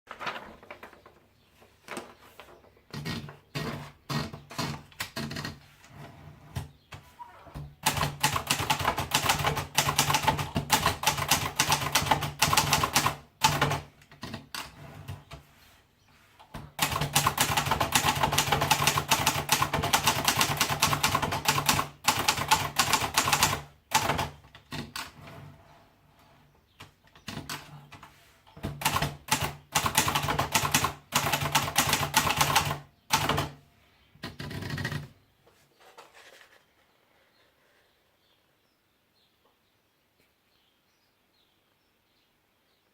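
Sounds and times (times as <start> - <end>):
manual typewriter typing: 2.9 - 5.6, 7.8 - 15.2, 16.6 - 25.2, 26.8 - 33.6, 34.2 - 35.1.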